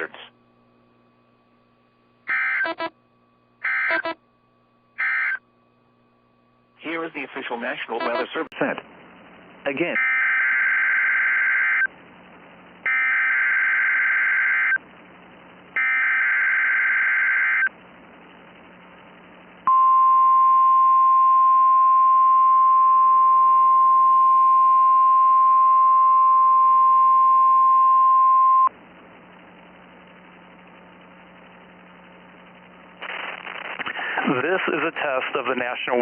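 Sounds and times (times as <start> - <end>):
steady warning alarm tone: 2.3 - 2.9, 3.6 - 4.2, 5.0 - 5.4, 10.0 - 11.9, 12.9 - 14.8, 15.8 - 17.7
buzzing data tone bursts: 2.3 - 3.0, 3.6 - 4.2, 5.0 - 5.4, 7.9 - 8.5, 9.9 - 11.9, 12.9 - 14.8, 15.8 - 17.7.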